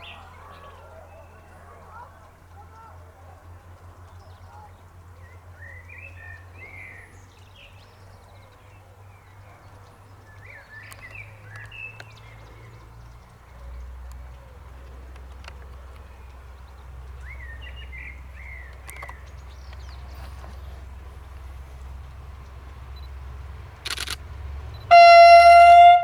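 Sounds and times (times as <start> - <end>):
songbirds chirping: 0.0 - 26.0
steady low rumble: 11.2 - 26.0.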